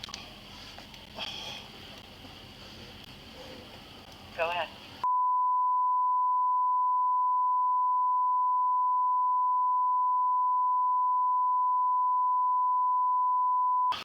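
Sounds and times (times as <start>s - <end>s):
steady beep tone: 5.0s - 13.9s.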